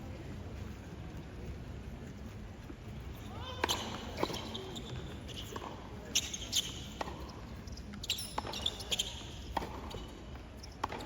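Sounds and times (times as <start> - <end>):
low crowd murmur: 0.0 - 11.0
tennis ball impacts: 9.5 - 10.0.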